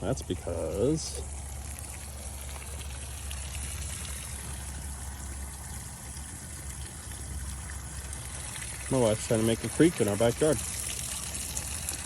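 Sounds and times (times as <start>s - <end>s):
water overflowing onto ground: 0.0s - 12.0s
water running into trough: 0.0s - 12.0s.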